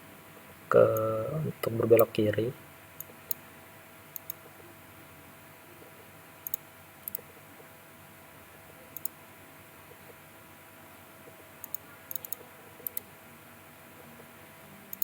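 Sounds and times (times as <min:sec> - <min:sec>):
faint steady hum: 0:00.0 - 0:15.0
computer mouse clicks: 0:04.1 - 0:04.5, 0:06.4 - 0:07.2, 0:08.9 - 0:09.2, 0:11.6 - 0:13.1.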